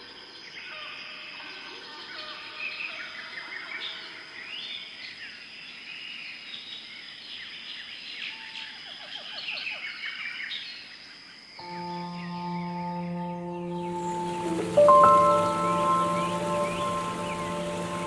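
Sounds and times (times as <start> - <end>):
high insect drone: 11.6 - 18.0
singing bowl music tone: 11.6 - 18.0
birds chirping and whistling: 13.6 - 18.0.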